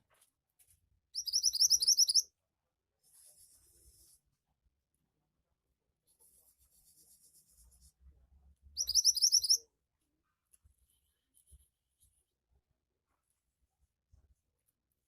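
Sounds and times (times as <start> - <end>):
bird twittering and chirping: 1.2 - 2.2, 8.8 - 9.6.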